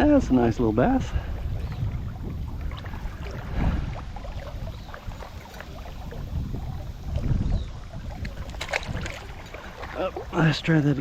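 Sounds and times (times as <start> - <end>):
wind rumbling on microphone: 0.0 - 11.0.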